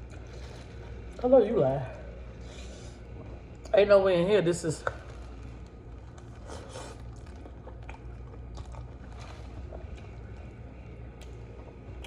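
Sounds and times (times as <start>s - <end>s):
person eating noodles: 0.0s - 1.2s, 4.9s - 11.8s
low background hum: 0.0s - 12.0s
chewing clicks and smacks: 4.8s - 10.2s, 11.1s - 12.0s.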